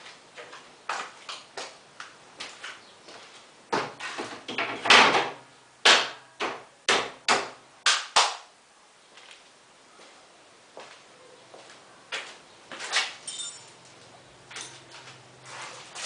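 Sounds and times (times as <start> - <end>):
short knocks and scrapes: 3.8 - 4.9.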